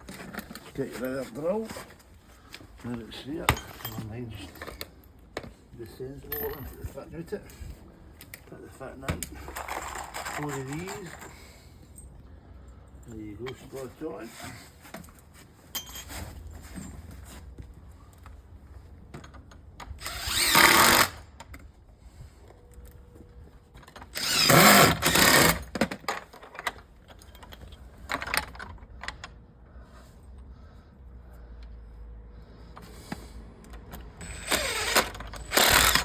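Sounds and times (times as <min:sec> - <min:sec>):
cordless drill driving screws: 0:09.5 - 0:10.9, 0:20.0 - 0:21.2, 0:24.1 - 0:25.7, 0:34.2 - 0:36.0.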